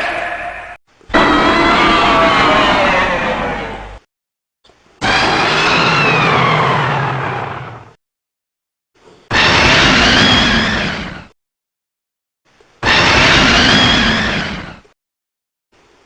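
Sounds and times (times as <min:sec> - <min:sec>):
monster roar: 0:00.0 - 0:04.0.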